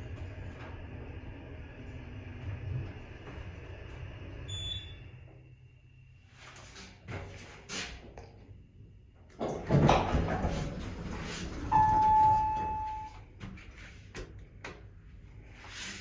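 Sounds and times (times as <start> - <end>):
elevator doors sliding with rattle: 0.0 - 5.4, 9.4 - 14.6
electronic elevator chime: 11.7 - 13.2.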